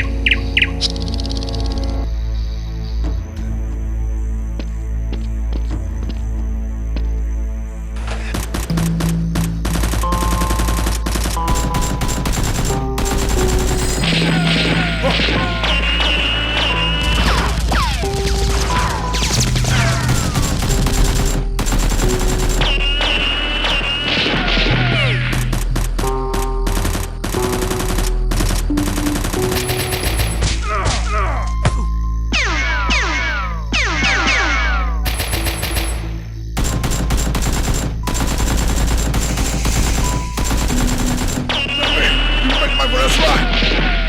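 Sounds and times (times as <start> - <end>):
background music: 0.0 - 44.0
rapid automatic gunfire: 8.3 - 18.6, 19.2 - 24.6, 26.6 - 30.4, 35.1 - 43.4.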